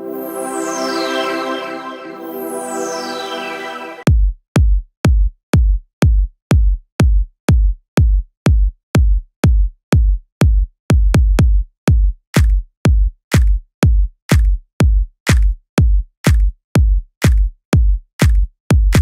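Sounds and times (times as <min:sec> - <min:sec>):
deep kick drum beat: 0:04.1 - 0:19.0.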